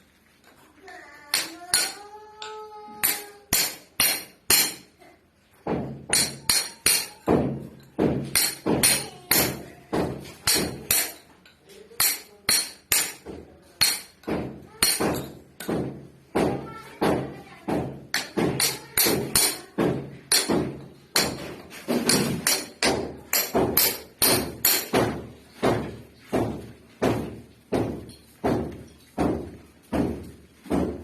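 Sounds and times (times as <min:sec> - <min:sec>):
hammer blows knocking: 0:12.0 - 0:31.0.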